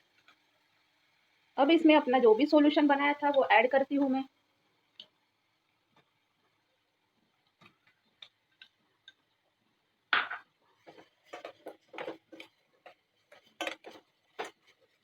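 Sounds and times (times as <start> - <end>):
utensils clinking and scraping a pan: 10.8 - 15.0.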